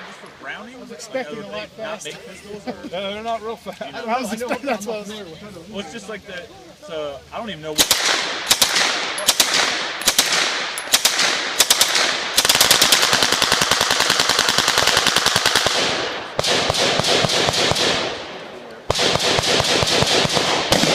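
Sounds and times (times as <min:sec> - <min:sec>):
submachine gun firing: 0:07.8 - 0:20.9.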